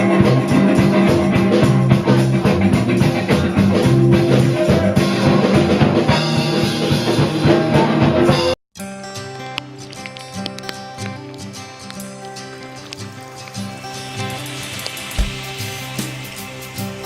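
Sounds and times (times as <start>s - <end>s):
rock music with drums and guitar: 0.0s - 17.0s
quieter music: 8.8s - 17.0s.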